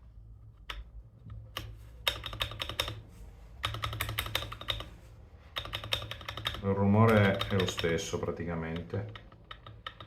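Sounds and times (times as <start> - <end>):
typing on mechanical keyboard: 1.6 - 3.0, 3.6 - 4.9, 5.6 - 10.0.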